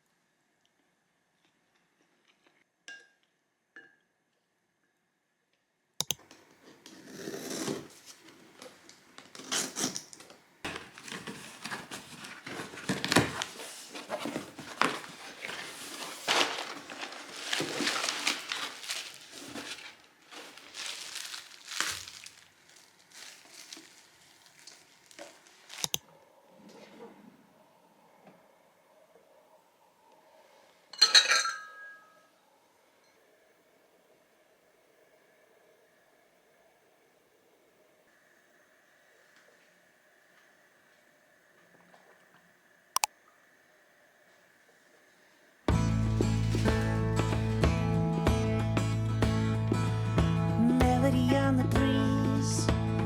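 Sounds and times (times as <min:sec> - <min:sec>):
wrapping crinkling: 0:07.7 - 0:26.0, 0:45.8 - 0:47.6.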